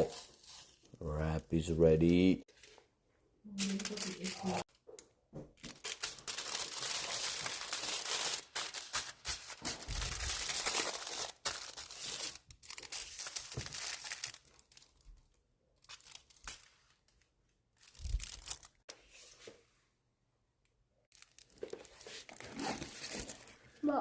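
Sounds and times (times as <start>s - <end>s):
packaging crinkling: 3.6s - 4.8s, 5.6s - 16.7s, 17.8s - 18.8s, 21.1s - 23.6s.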